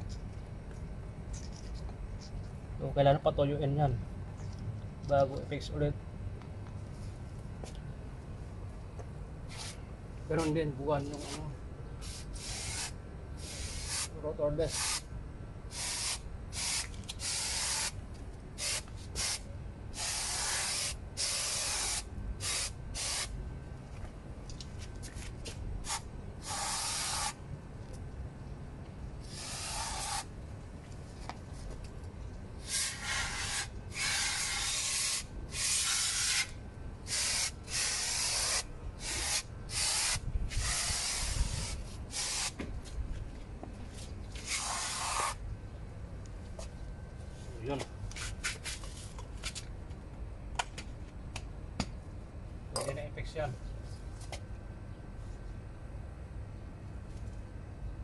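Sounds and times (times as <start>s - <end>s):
aerosol spray can hissing: 15.7s - 17.9s, 20.0s - 23.3s, 25.9s - 27.4s, 29.3s - 30.3s, 32.6s - 36.5s, 37.1s - 42.6s, 44.4s - 45.4s.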